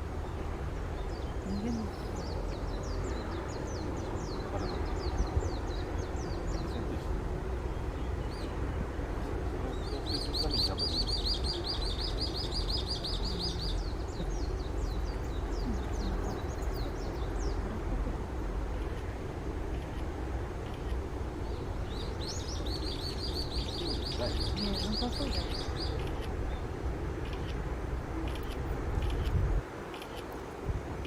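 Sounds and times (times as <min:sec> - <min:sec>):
small birds calling: 0:09.6 - 0:18.0, 0:18.8 - 0:27.6.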